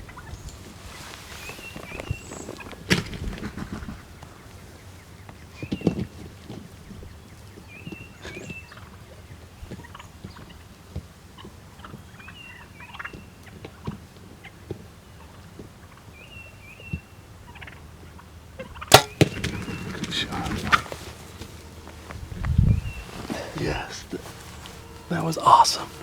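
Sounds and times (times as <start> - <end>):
turkeys calling: 0.0 - 10.7, 16.9 - 26.0.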